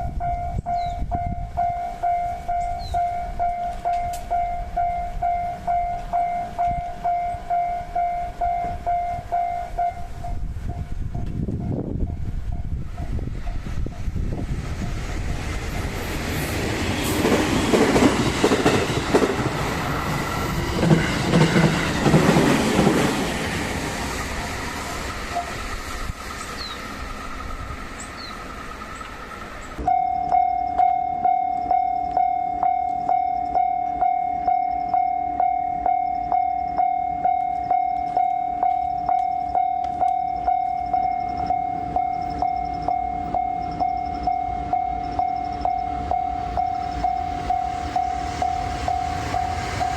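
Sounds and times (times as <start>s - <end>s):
level crossing warning bell: 0.0s - 14.2s, 24.3s - 26.7s, 29.5s - 49.9s
train wheels rolling past: 0.0s - 49.9s.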